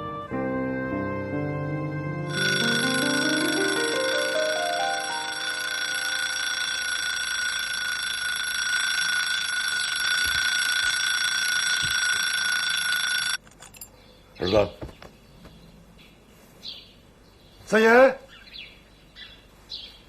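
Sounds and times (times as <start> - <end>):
soft piano music: 0.0 - 5.3.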